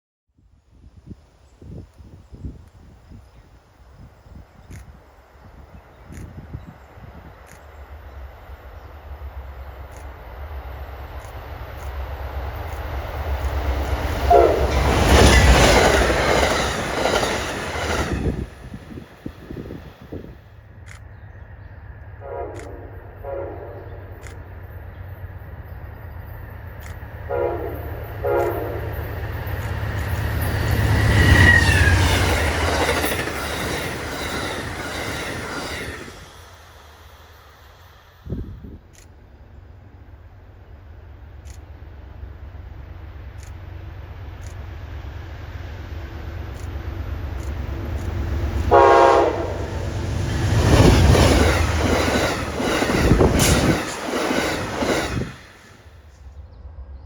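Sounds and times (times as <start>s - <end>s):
train wheel and rail rattle: 1.0s - 23.2s, 23.9s - 57.0s
train horn blasts: 14.2s - 15.4s, 22.2s - 24.1s, 27.3s - 29.0s, 48.7s - 49.8s.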